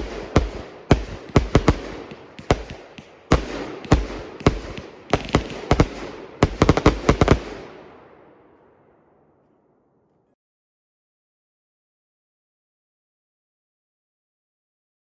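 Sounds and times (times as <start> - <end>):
firework bangs: 0.0 - 8.3.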